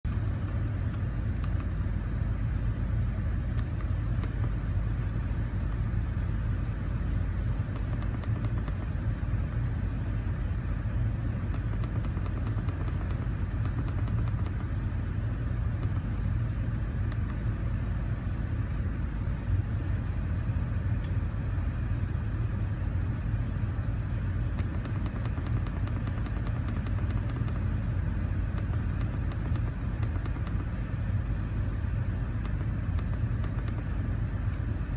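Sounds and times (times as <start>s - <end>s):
car engine idling: 0.0s - 18.5s, 24.2s - 34.9s
quick ticks: 7.7s - 9.0s, 11.5s - 14.6s, 24.6s - 27.6s, 28.6s - 30.7s, 32.4s - 33.8s.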